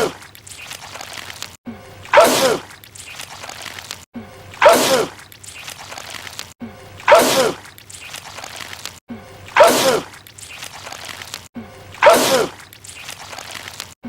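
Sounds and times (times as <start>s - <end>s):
man sneezing loudly: 9.6s - 10.1s, 12.0s - 12.6s.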